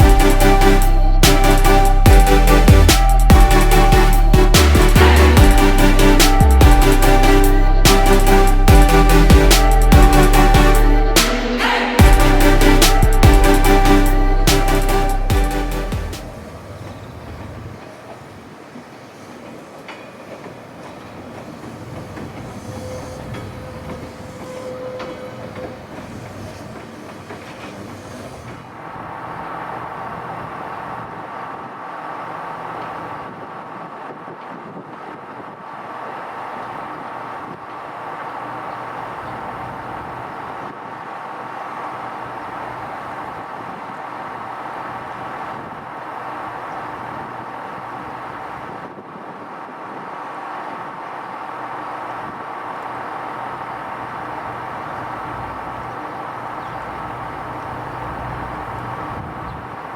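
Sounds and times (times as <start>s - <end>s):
mechanical drone: 0.0s - 17.8s, 51.9s - 59.9s.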